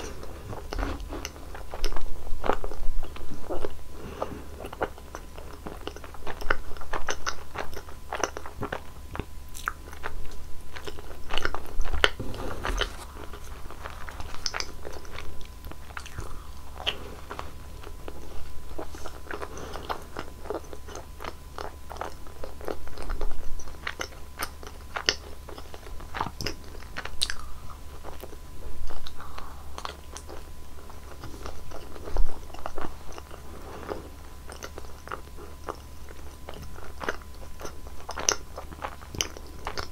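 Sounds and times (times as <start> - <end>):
biting and chewing: 0.0 - 39.9.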